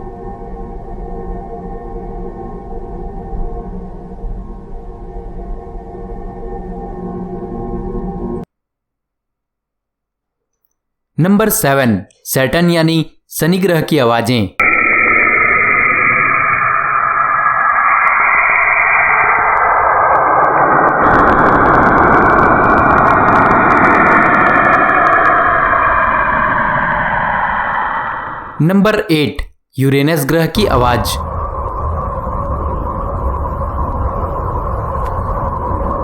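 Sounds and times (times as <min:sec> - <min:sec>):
held steady tone: 0:00.0 - 0:08.5, 0:14.6 - 0:28.6
low rumble: 0:00.0 - 0:08.5, 0:14.6 - 0:28.6, 0:30.6 - 0:36.0
eerie whooshing noise: 0:14.6 - 0:28.6, 0:30.5 - 0:36.0.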